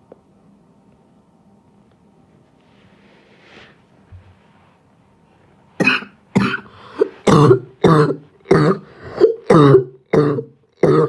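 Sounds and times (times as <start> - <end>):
person coughing: 5.8 - 11.0.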